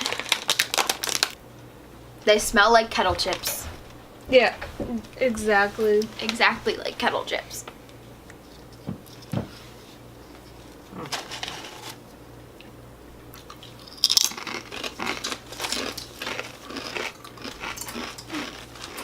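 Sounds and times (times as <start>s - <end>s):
crunching potato chips: 0.0s - 1.4s, 13.3s - 19.0s.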